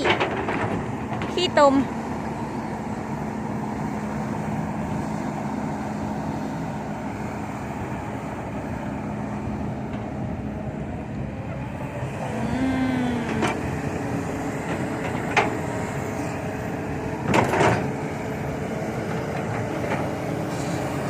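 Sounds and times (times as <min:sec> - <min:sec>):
heavy diesel engine running: 0:00.0 - 0:21.0.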